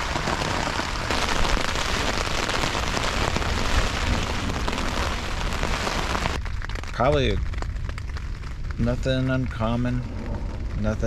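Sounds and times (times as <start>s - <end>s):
hard rain on tent fabric: 0.0s - 11.0s.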